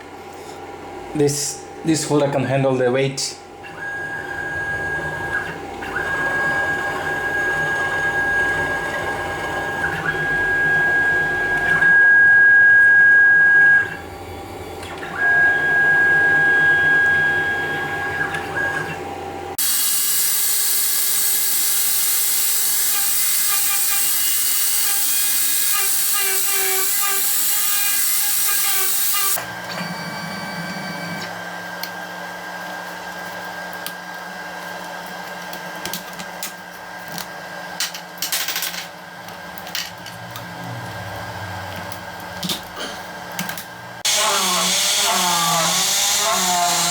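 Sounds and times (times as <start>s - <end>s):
router motors whining: 3.8s - 32.8s, 43.4s - 46.9s.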